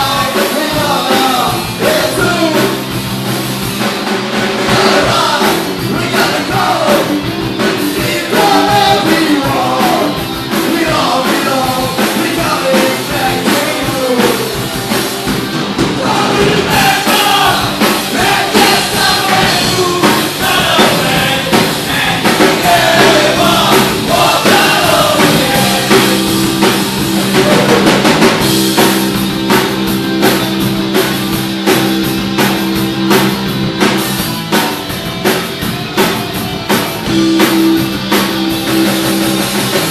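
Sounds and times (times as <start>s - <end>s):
drum kit: 0.0s - 39.9s
punk rock band playing: 0.0s - 39.9s
person singing: 4.7s - 14.6s, 16.0s - 26.4s.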